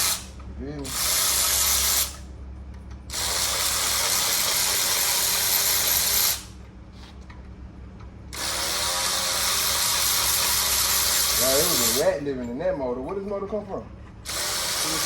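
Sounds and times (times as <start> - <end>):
air ratchet hissing: 0.0 - 2.2, 3.1 - 6.5, 8.3 - 12.2, 14.2 - 15.0.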